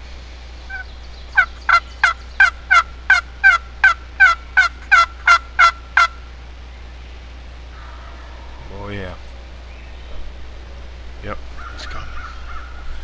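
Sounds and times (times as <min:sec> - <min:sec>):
turkey call hen yelps: 0:00.7 - 0:06.4, 0:07.7 - 0:13.0.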